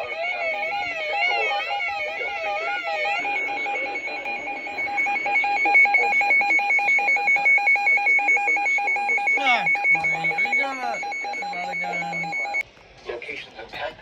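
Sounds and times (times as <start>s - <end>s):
warbling siren-like tone: 0.0s - 12.6s
fast-pulsing two-pitch alert beeps: 2.7s - 12.6s.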